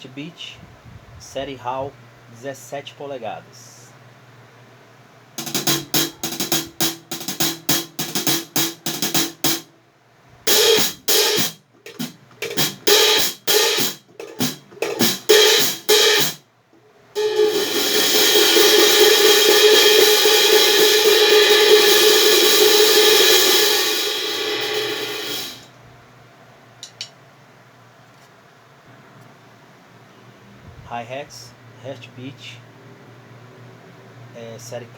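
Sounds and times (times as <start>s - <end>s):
open hi-hat ringing: 5.3s - 9.8s, 10.5s - 16.5s, 17.2s - 25.7s
hi-hat cymbal strokes: 10.5s - 16.4s, 17.2s - 25.7s.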